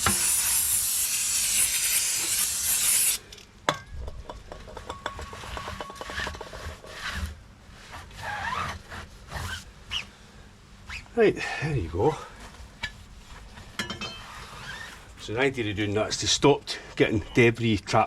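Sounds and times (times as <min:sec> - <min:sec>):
harsh hissing rasp: 0:00.0 - 0:03.3
scrapes and knocks on rim: 0:04.0 - 0:07.3.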